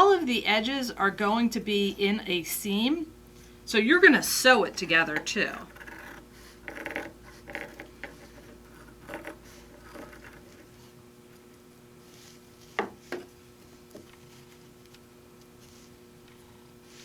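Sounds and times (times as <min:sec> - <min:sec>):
soft rubbing and shuffling: 0:12.0 - 0:17.0.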